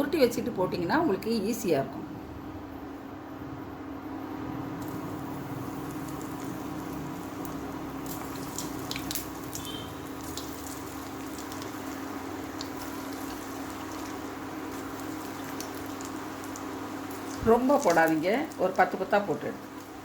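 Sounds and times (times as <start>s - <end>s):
deep-frying sizzle with pops: 4.8s - 20.0s.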